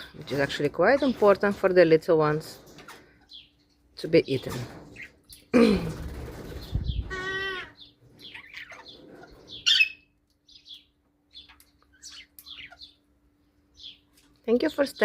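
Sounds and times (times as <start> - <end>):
parrot wings flapping: 5.8 - 7.0
parrots chirping: 6.6 - 13.1.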